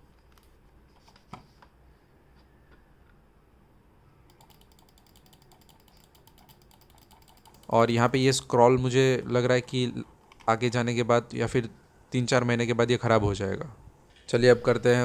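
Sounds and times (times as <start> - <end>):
mouse scroll wheel ticking: 4.3 - 7.8.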